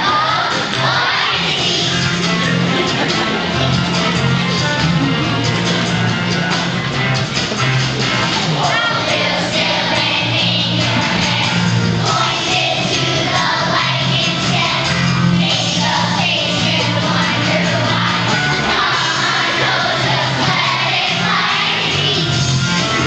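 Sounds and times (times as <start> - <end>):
vocal group singing: 0.0 - 5.4, 8.3 - 23.0
instrumental accompaniment: 0.0 - 23.0
low bass part: 2.0 - 8.6.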